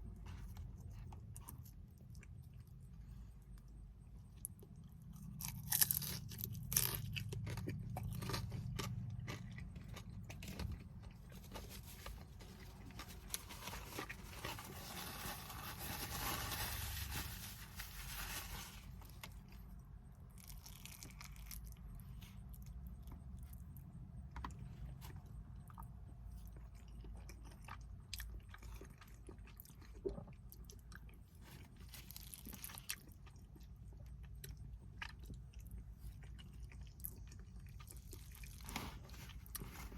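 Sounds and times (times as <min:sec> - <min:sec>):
person chewing crunchy food: 0:00.0 - 0:17.3, 0:17.9 - 0:39.9.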